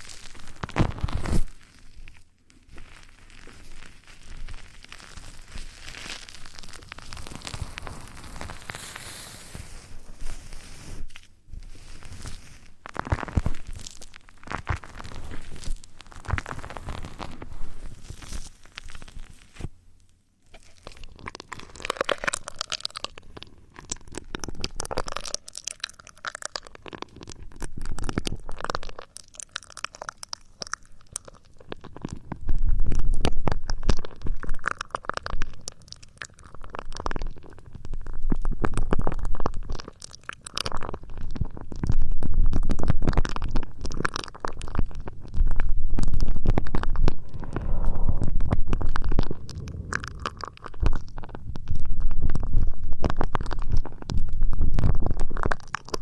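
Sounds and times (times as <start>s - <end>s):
crinkly scratching with clicks: 0.0s - 56.0s
low rubbing against microphone: 7.6s - 12.8s, 46.6s - 52.7s.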